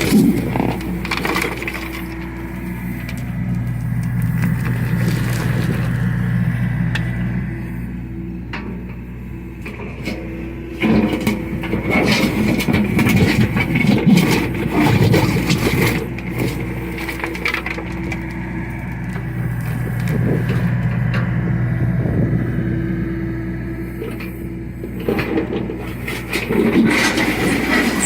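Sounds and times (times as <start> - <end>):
bucket cracking and crunching material: 0.0 - 6.2, 11.2 - 20.8
excavator diesel engine running: 0.0 - 28.0
hydraulics running: 0.0 - 28.0.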